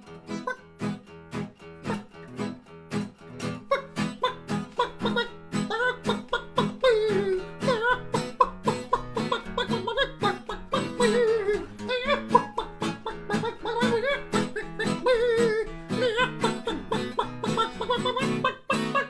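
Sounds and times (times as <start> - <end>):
strummed acoustic strings: 0.0 - 19.0
man imitating a chicken: 3.7 - 19.0.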